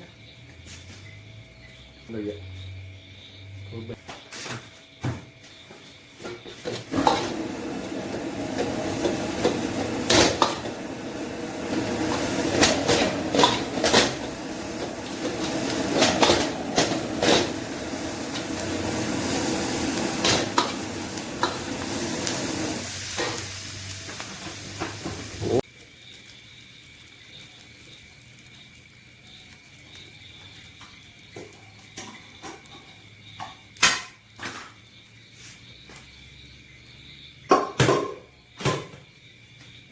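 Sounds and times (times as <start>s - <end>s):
food sizzling: 6.6s - 34.6s.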